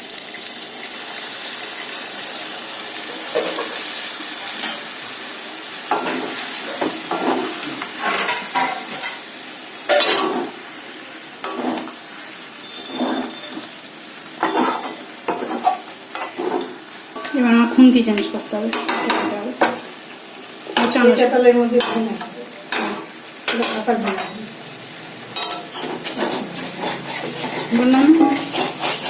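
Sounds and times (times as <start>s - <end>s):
food sizzling in a pan: 0.0s - 29.0s
spatula scraping a pan: 5.9s - 9.3s, 11.4s - 13.8s, 14.4s - 17.7s, 25.3s - 29.0s.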